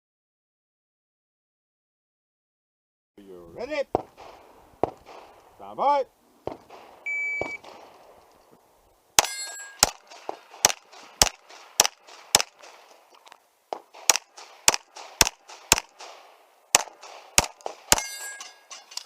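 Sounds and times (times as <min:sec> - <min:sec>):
shot timer beep: 0:07.1 - 0:07.6
steel target metallic ringing: 0:09.2 - 0:10.2, 0:17.8 - 0:19.0
handgun shots: 0:09.2 - 0:13.0, 0:13.7 - 0:18.3.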